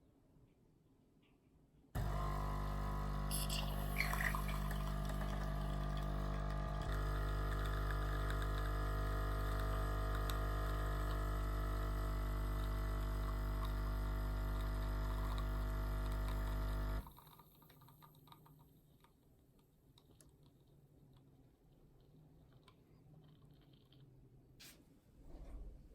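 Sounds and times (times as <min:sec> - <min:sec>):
coffee machine pump humming: 0:02.0 - 0:18.4
coffee pouring into cup: 0:02.0 - 0:18.4.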